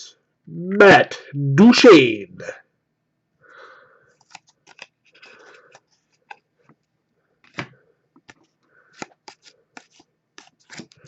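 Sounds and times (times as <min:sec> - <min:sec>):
cards and wrappers crinkling: 0:04.2 - 0:06.4, 0:08.3 - 0:11.0.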